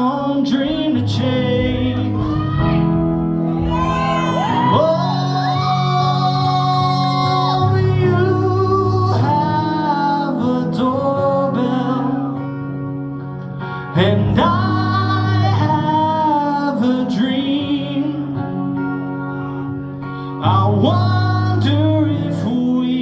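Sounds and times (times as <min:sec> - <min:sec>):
singers holding gliding notes: 0:00.0 - 0:22.7
steady bass: 0:00.6 - 0:05.6
live band playing: 0:01.4 - 0:06.7.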